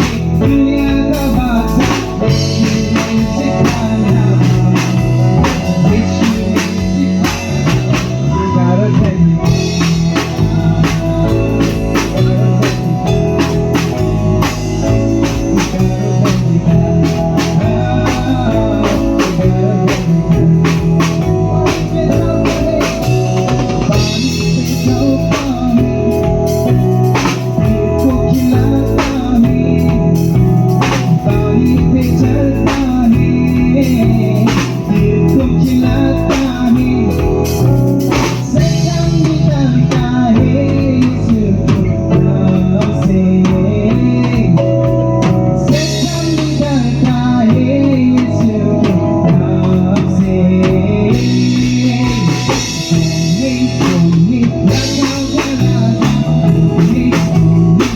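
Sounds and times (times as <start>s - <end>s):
live band playing: 0.0s - 57.9s
drum beat: 9.0s - 40.7s.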